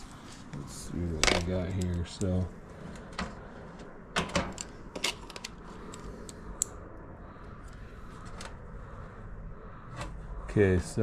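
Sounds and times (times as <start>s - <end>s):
light clicks of small tools: 1.2s - 3.3s, 4.6s - 6.8s.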